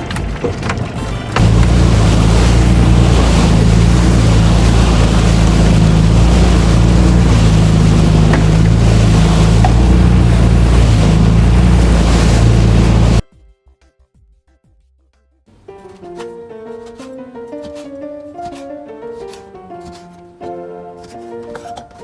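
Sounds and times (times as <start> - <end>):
boat engine drone: 0.0 - 13.2
rushing water: 0.0 - 13.2
wind on microphone: 1.4 - 13.2.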